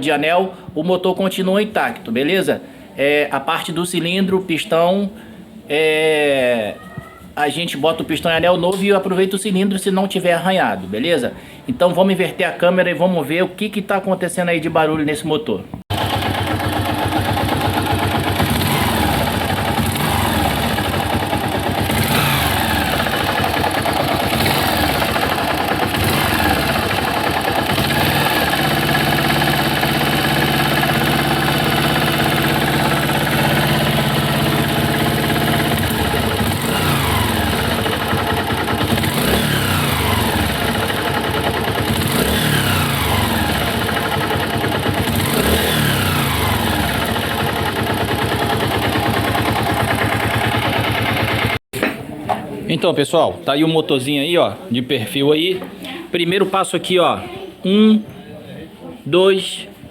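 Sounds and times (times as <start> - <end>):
motorcycle engine revving: 15.9 - 51.6.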